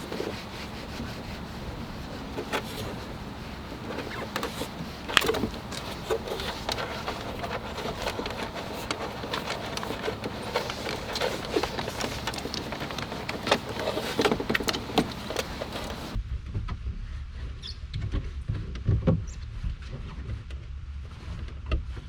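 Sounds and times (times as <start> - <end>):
hands working on car parts: 0.0 - 16.2.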